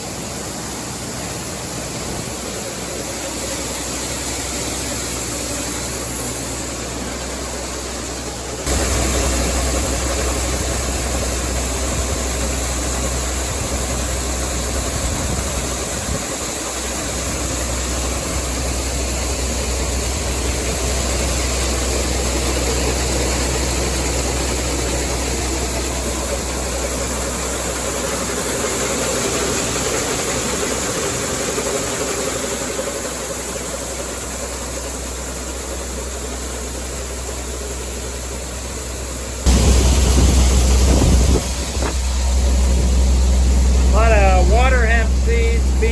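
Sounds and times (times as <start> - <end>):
tractor engine running: 0.1 - 45.9.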